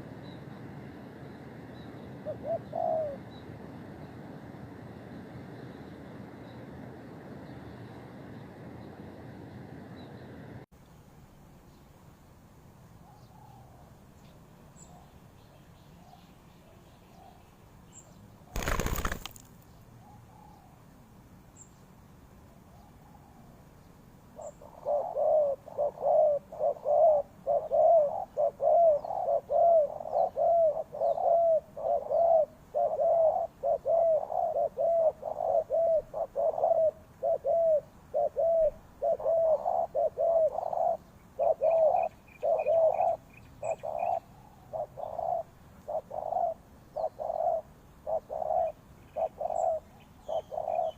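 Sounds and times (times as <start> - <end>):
dove cooing: 2.2 - 3.3, 24.4 - 50.9.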